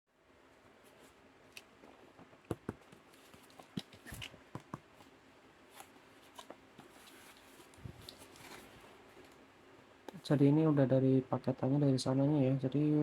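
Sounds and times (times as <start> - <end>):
packaging rustling: 5.7 - 9.4.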